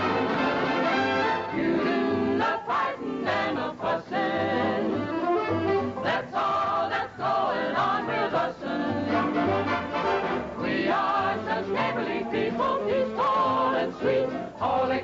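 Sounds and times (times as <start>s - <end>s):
voices singing together: 0.0s - 15.0s
instrumental backing with bass: 4.2s - 14.8s.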